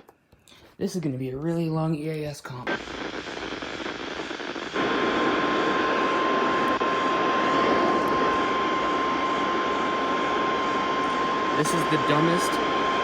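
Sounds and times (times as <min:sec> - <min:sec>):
radio static hiss: 0:02.2 - 0:13.0
steady alarm tone: 0:02.7 - 0:13.0.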